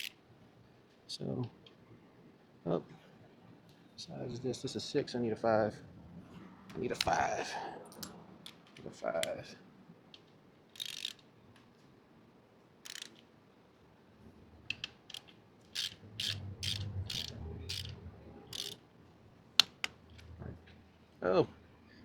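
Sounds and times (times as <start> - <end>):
ratchet wrench clicking: 10.8 - 11.2, 12.8 - 13.2, 14.7 - 18.8.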